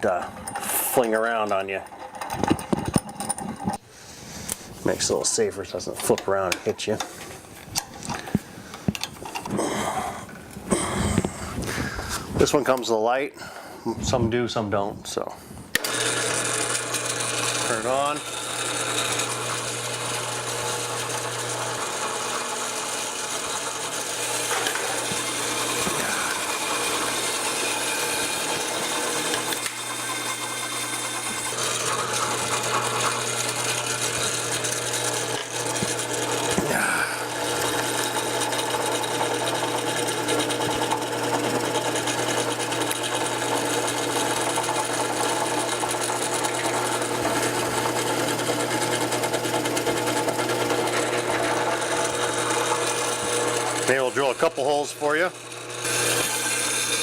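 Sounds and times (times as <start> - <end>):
drill press motor humming: 15.7 - 57.0.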